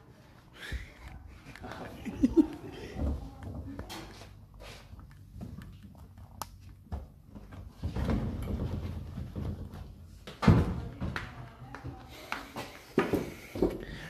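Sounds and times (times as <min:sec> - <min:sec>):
rustling and knocking of parts: 0:01.0 - 0:11.9.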